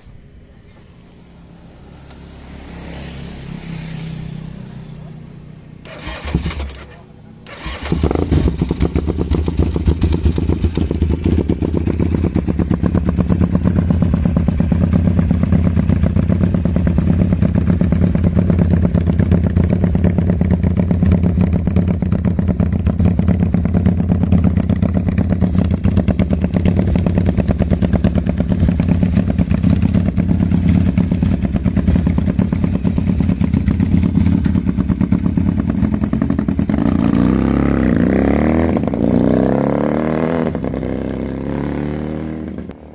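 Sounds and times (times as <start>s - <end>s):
v-twin engine idling: 8.9s - 36.8s.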